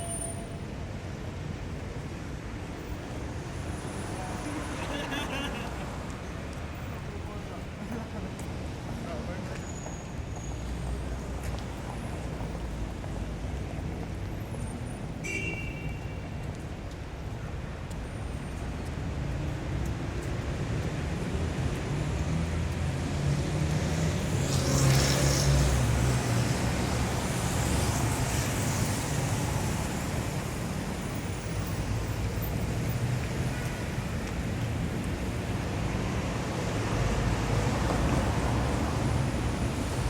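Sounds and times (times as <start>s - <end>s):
brief high tone: 0.0s - 0.7s
traffic rumble of engines and tyres: 0.0s - 40.0s.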